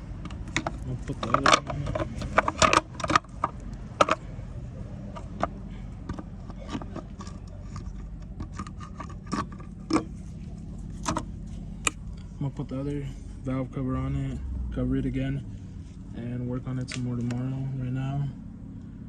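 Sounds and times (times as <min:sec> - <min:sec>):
metal engine parts clinking: 0:00.0 - 0:13.2
steady low hum: 0:00.0 - 0:19.0.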